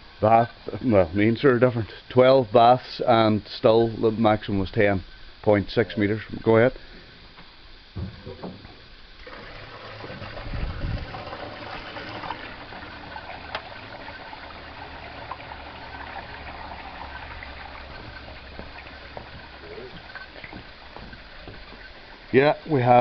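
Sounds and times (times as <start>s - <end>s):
water gushing down a pipe: 9.2s - 23.0s.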